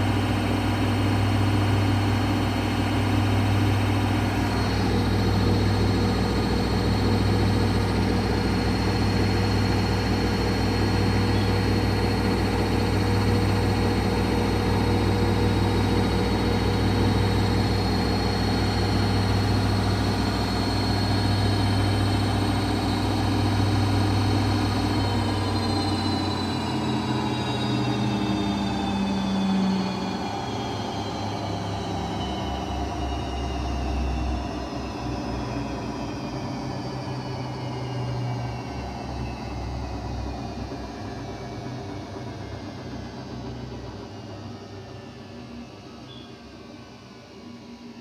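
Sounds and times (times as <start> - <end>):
washing machine spinning: 0.0 - 35.7.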